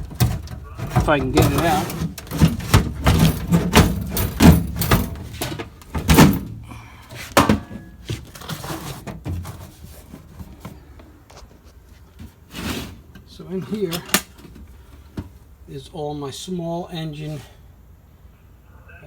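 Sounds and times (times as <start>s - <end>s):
box knocking in toolbox cabinet: 0.0s - 6.5s.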